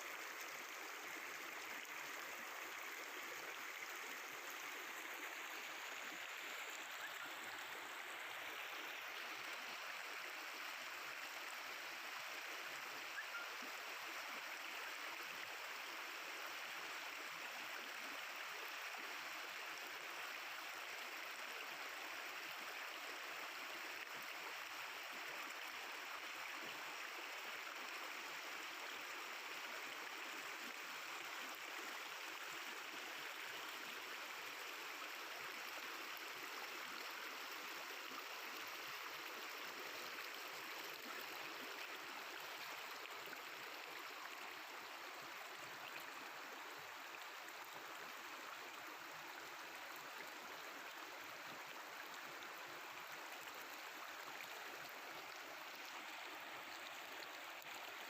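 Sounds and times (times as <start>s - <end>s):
river water babbling: 0.0s - 58.0s.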